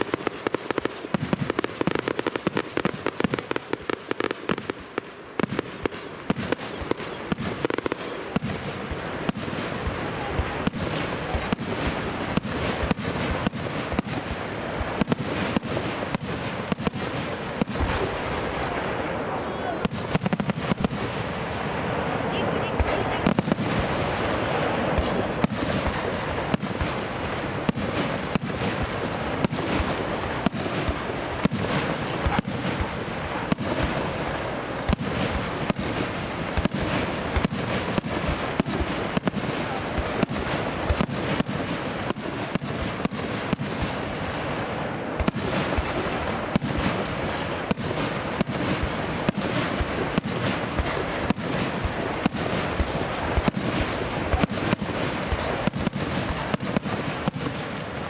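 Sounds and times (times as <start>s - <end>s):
fireworks bangs: 0.0s - 58.0s
fireworks crackling: 0.0s - 58.0s.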